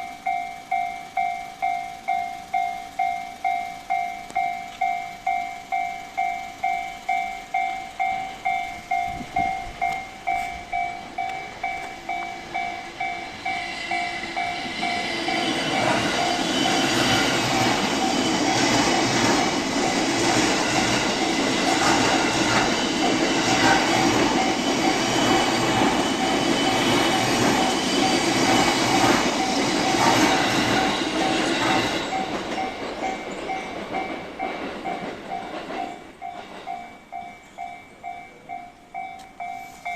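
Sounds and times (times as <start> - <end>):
level crossing warning bell: 0.0 - 39.9
train wheels clacking over rail joints: 7.6 - 37.7.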